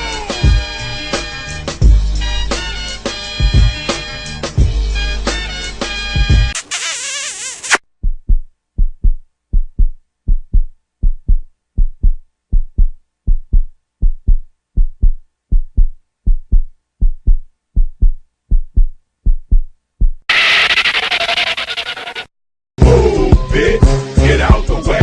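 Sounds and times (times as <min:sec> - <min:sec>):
heartbeat thumps: 0:08.0 - 0:20.3.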